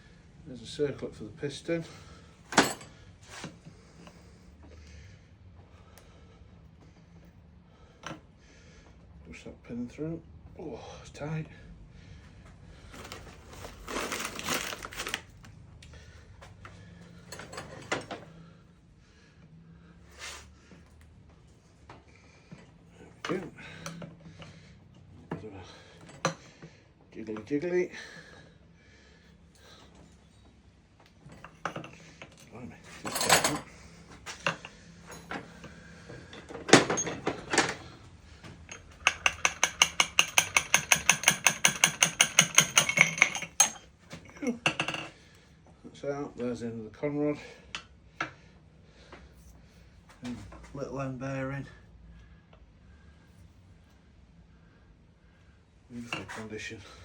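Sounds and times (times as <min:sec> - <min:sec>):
sharp clicks and knocks: 0:38.7 - 0:43.8.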